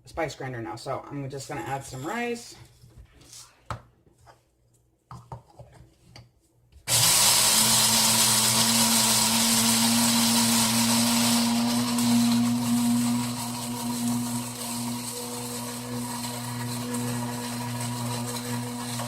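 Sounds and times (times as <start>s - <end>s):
electric spice grinder running: 6.9s - 19.0s.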